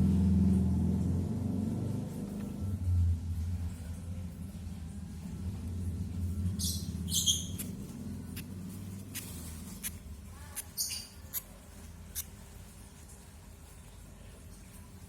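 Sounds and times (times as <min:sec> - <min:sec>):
low hum: 0:00.0 - 0:10.3
bird chicks squeaking: 0:06.6 - 0:11.5.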